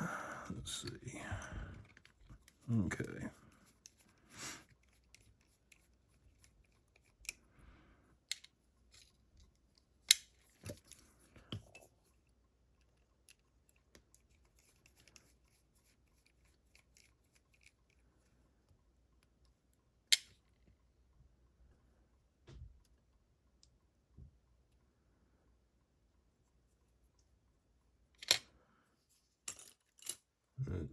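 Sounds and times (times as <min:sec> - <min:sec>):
metallic clicks of lock parts: 0:28.2 - 0:28.5.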